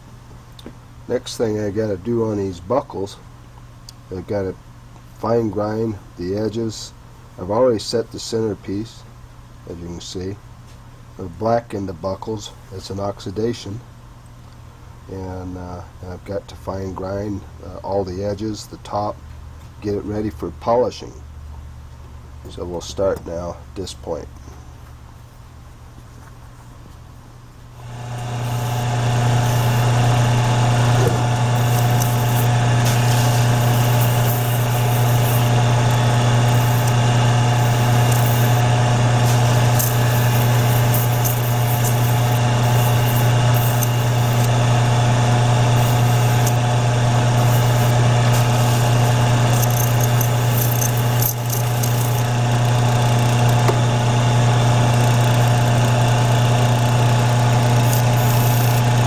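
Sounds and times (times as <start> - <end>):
electric grinder humming: 27.8 - 59.0
scratchy grinding on metal: 27.8 - 59.0.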